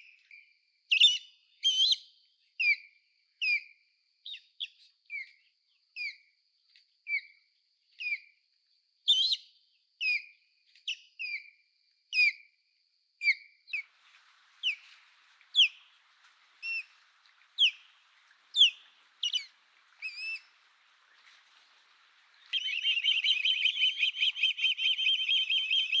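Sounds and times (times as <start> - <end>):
osprey whistled calls: 14.6 - 26.0.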